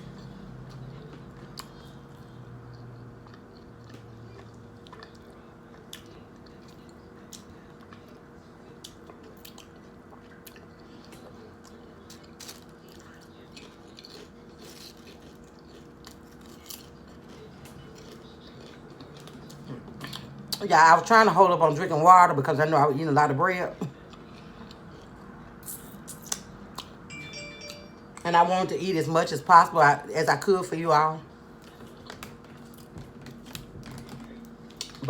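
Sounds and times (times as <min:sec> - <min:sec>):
chewing and biting sandwich: 0:00.0 - 0:20.6, 0:23.9 - 0:27.0, 0:31.5 - 0:35.0
faint steady hum: 0:00.0 - 0:35.0.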